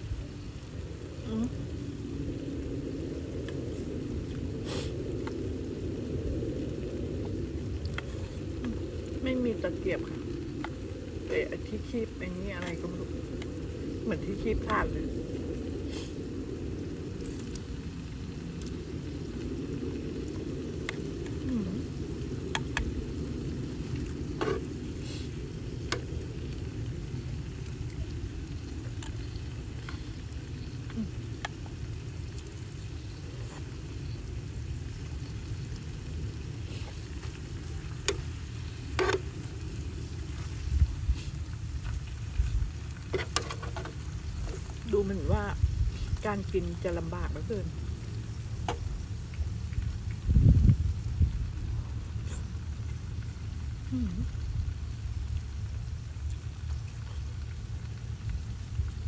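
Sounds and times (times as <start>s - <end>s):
wind buffeting microphone: 0.0s - 56.6s
grill hissing: 0.0s - 59.0s
short hiss: 4.6s - 5.0s.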